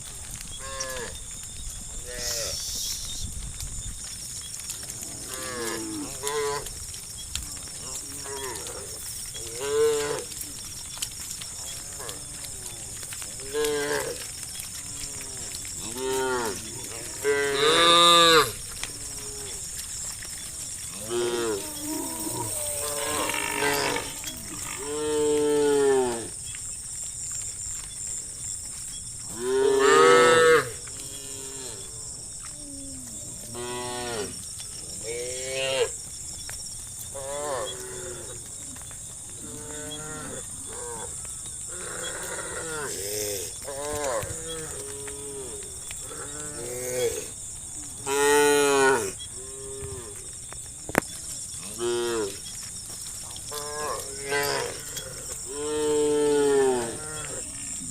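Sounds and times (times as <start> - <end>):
high-pitched hiss: 2.0 - 3.5.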